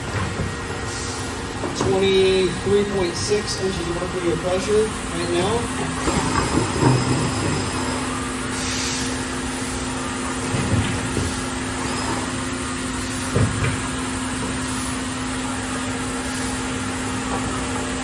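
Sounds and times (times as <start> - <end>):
vacuum pump humming: 0.0 - 18.0.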